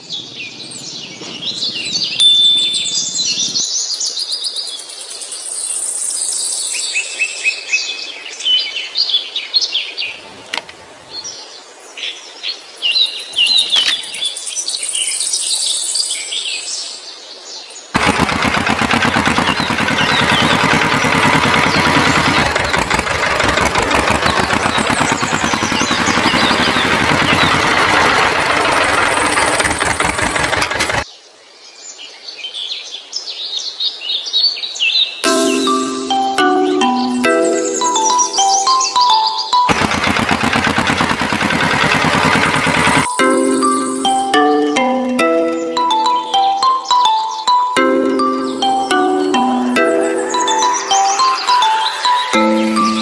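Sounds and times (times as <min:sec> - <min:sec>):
birds chirping and trilling: 0:00.0 - 0:05.7, 0:06.6 - 0:31.0, 0:43.8 - 0:53.0
motor running with rough vibration: 0:18.0 - 0:31.0, 0:39.7 - 0:43.1.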